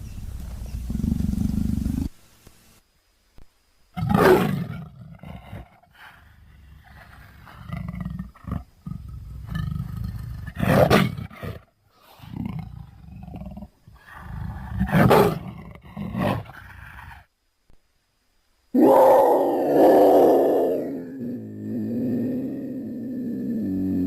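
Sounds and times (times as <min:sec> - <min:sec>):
big cat growling: 0:18.8 - 0:24.0
big cat roaring: 0:18.8 - 0:24.0.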